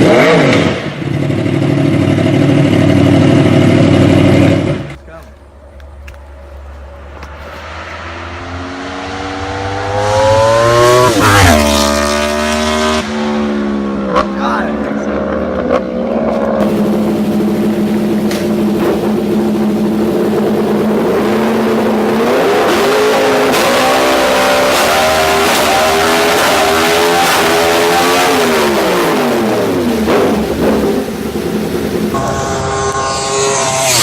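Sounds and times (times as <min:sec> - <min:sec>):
motorcycle engine revving: 0:00.0 - 0:05.0, 0:06.6 - 0:34.0.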